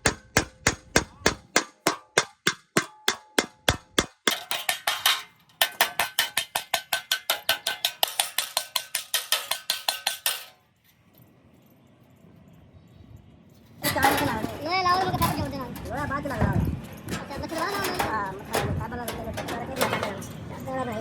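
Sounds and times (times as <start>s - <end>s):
hammer blows on metal: 0.0s - 10.6s.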